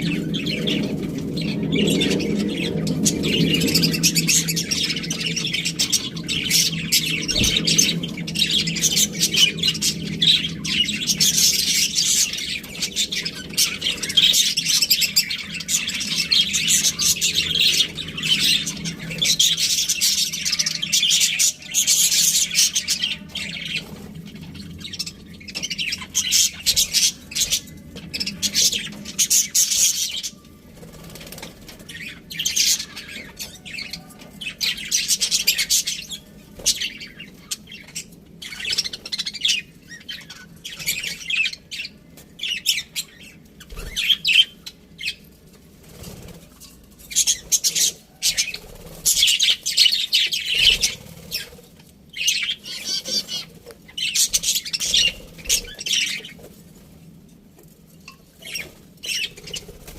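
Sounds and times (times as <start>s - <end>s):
budgerigars chattering and chirping: 0.0s - 30.4s, 47.1s - 56.4s, 58.4s - 59.9s.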